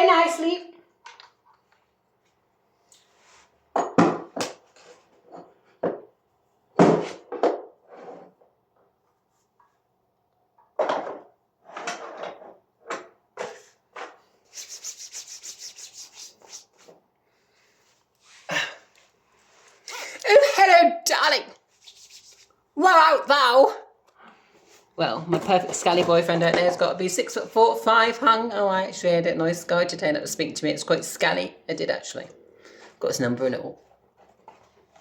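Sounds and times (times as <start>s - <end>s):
scraping rubs: 13.4s - 17.0s, 21.7s - 22.5s.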